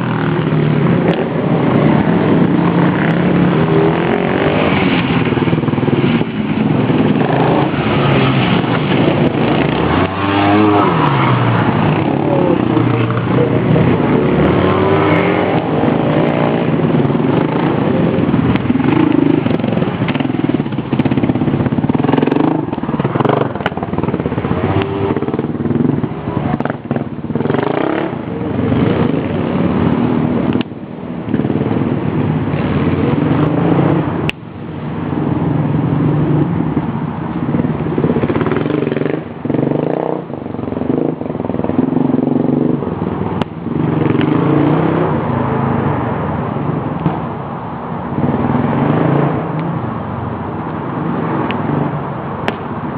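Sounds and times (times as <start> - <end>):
dirt bike engine revving: 0.0 - 30.4.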